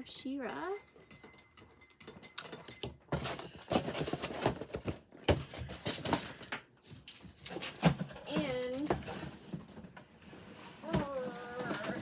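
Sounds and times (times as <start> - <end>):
cardboard packaging rustling: 3.1 - 12.0.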